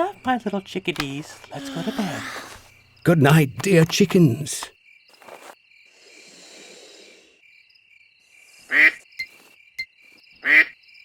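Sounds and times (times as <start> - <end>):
crickets chirping: 0.0 - 11.0
duck quacking: 8.7 - 9.0, 10.4 - 10.7.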